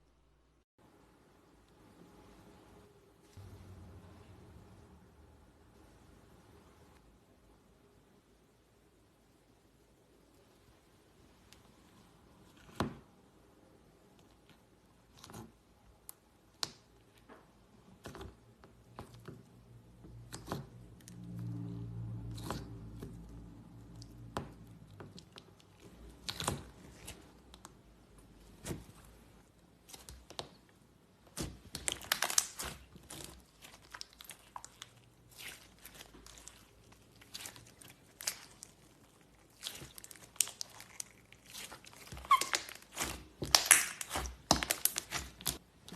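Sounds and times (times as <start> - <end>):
slime squeezed by hand: 31.3 - 45.6.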